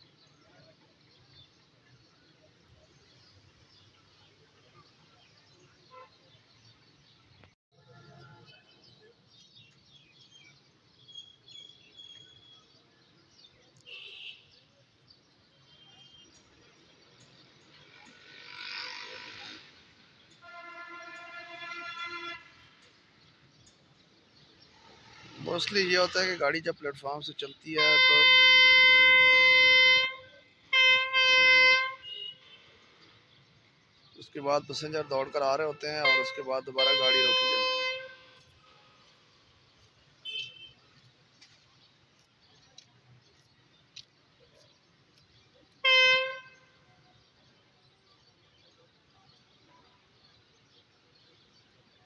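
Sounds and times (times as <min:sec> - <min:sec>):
railway platform background: 0:00.0 - 0:52.0.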